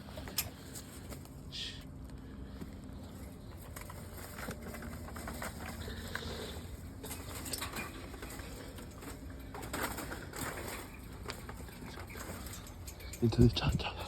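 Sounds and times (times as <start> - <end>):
steady low rumble: 10.2 - 14.0.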